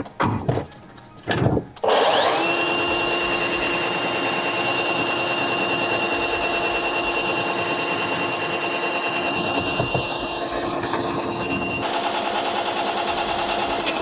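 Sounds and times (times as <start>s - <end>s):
drain snake motor running: 1.8s - 14.0s.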